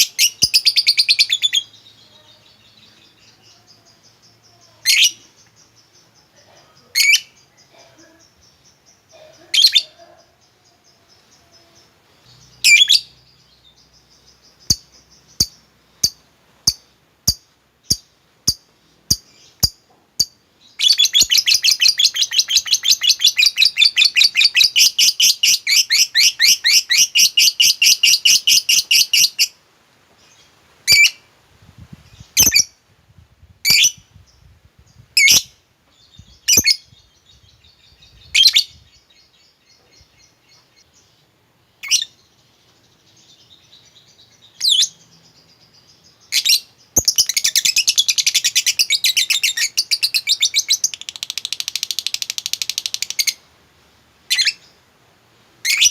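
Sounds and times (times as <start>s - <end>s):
lovebird chattering: 14.0s - 29.6s, 44.5s - 53.5s.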